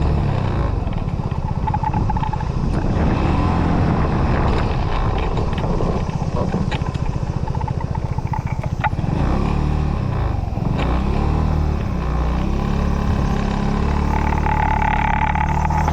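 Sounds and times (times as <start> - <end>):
motorcycle engine: 0.0 - 15.9
high ringing tone: 12.5 - 15.9.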